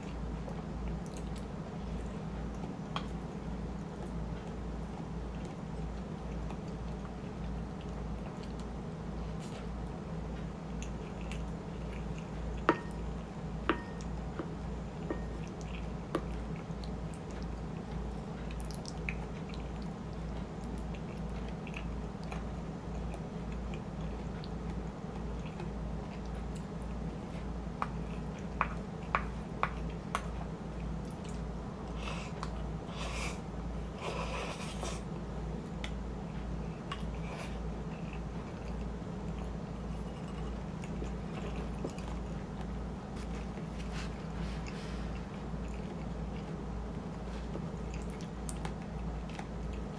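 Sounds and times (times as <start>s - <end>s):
close-up wet chewing: 5.3s - 49.9s.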